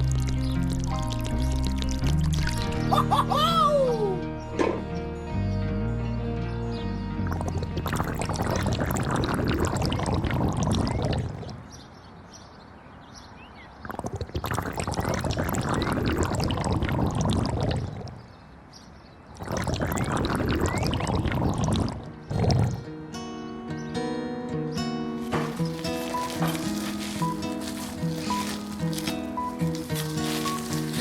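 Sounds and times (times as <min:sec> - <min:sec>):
loose material being poured: 0:07.3 - 0:11.5, 0:13.9 - 0:17.9, 0:25.2 - 0:31.0.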